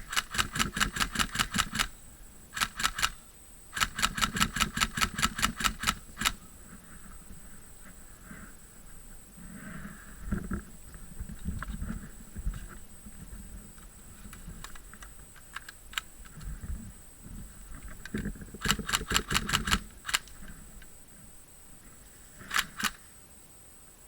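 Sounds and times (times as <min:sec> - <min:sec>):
low rustling movement: 0:06.1 - 0:23.2.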